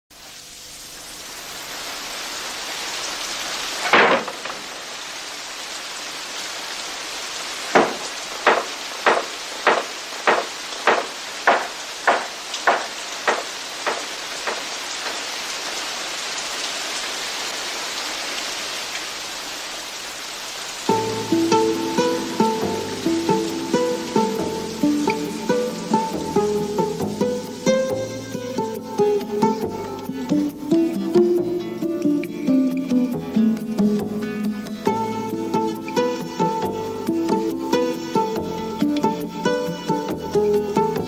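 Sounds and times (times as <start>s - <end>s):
rain-like hiss: 0.1s - 41.0s
sharp crack: 3.8s - 5.1s, 7.7s - 15.4s
evenly spaced knocks: 3.9s - 4.7s, 7.7s - 15.2s.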